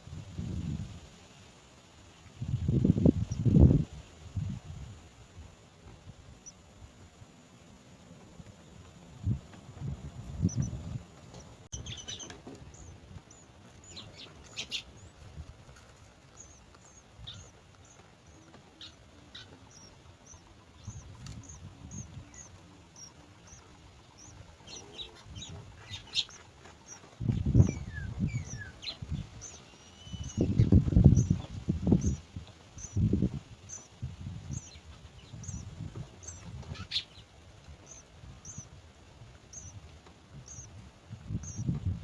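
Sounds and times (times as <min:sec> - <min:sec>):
nestling birds cheeping: 0:10.1 - 0:42.0.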